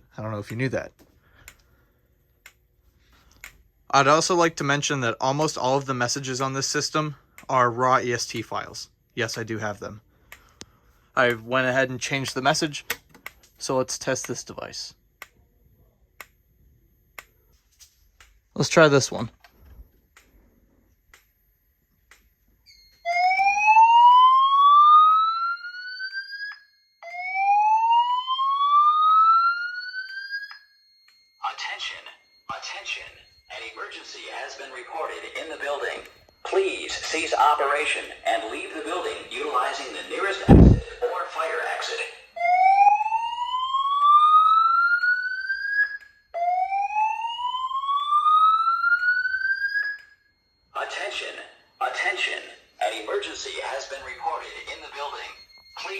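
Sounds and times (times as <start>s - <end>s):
whoop evacuation tone: 40.5s - 41.0s.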